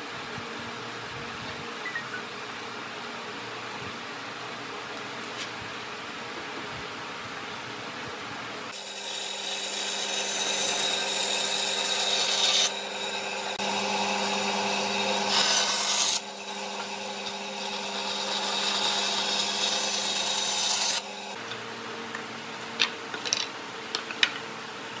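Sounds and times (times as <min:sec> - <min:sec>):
power tool working wood: 0:08.8 - 0:21.4
steady motor hum: 0:12.7 - 0:19.5.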